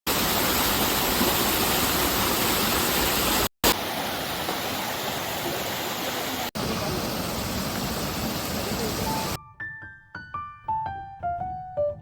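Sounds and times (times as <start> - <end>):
water rushing over rocks: 0.1 - 9.4.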